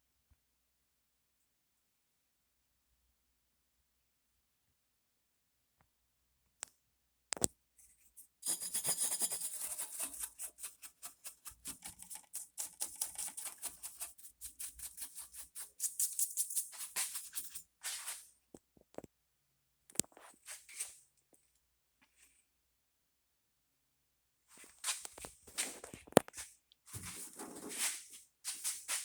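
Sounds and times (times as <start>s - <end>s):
brush scrubbing: 8.4s - 18.3s.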